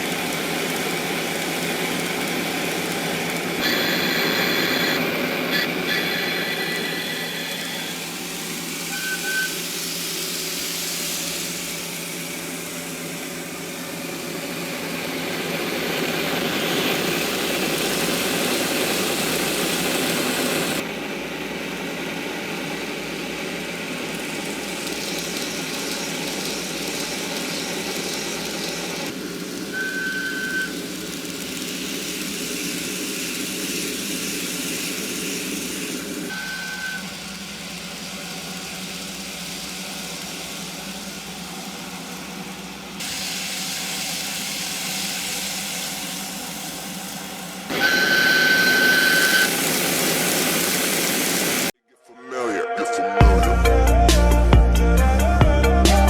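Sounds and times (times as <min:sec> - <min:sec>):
diesel locomotive engine: 0:00.0 - 0:51.8.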